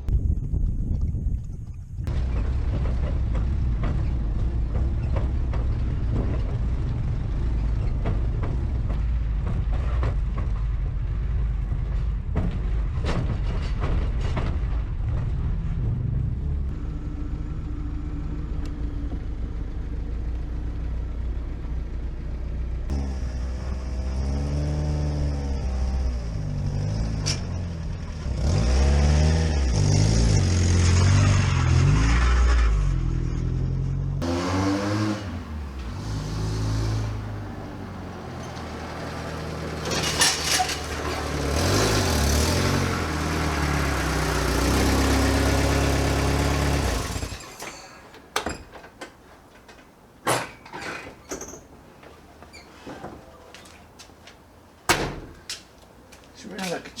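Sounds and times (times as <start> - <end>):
car engine revving while driving: 22.9 - 47.4.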